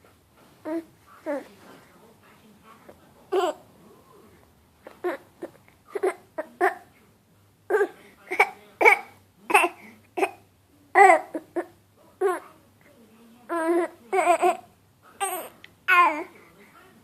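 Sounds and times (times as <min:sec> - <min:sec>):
baby babbling: 0:00.6 - 0:01.4, 0:03.3 - 0:03.6, 0:11.0 - 0:12.4, 0:13.5 - 0:14.6, 0:15.2 - 0:16.3.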